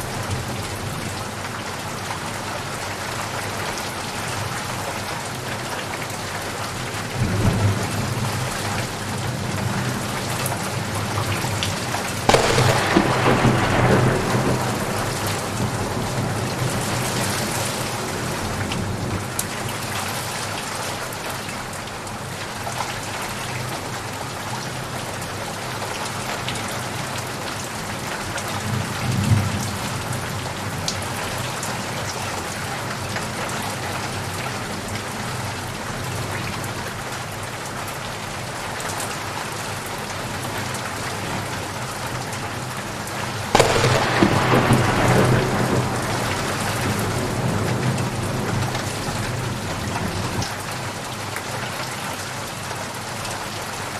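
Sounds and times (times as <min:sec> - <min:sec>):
steady rain: 0:00.0 - 0:53.9
low thunder rumble: 0:11.0 - 0:19.3, 0:43.6 - 0:50.3
loud thunderclap: 0:12.2 - 0:17.9, 0:43.6 - 0:48.8.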